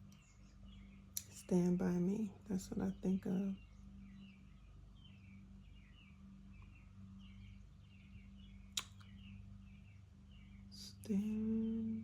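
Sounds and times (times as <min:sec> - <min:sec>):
steady low hum: 0:00.0 - 0:12.0
sharp click: 0:08.8 - 0:09.1.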